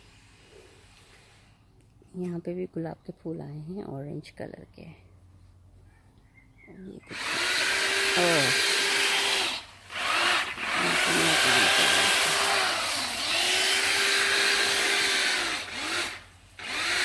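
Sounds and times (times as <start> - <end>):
electric cutting tool motor whine: 7.1 - 17.0.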